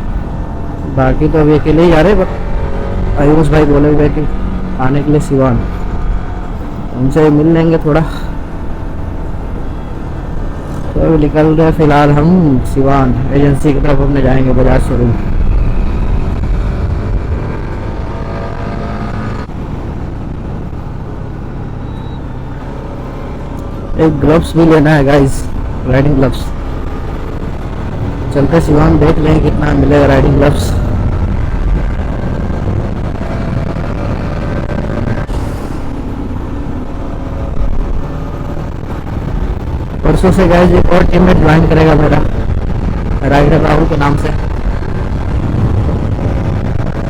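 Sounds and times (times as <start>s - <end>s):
wind rush on microphone: 12.6s - 24.0s, 25.4s - 47.0s.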